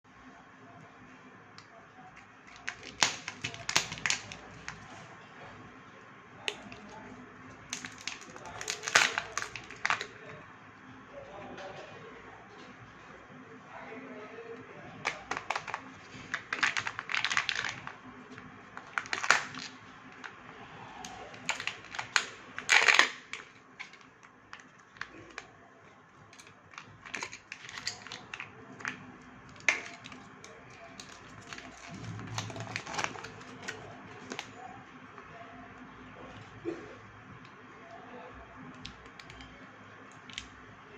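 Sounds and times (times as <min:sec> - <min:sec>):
plastic wrappers crinkling: 0:02.2 - 0:05.0, 0:07.6 - 0:10.2, 0:15.0 - 0:20.4, 0:21.1 - 0:25.6, 0:26.3 - 0:34.6.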